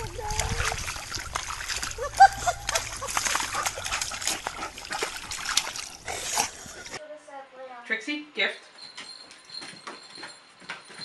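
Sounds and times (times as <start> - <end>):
water splashing: 0.0 - 7.0.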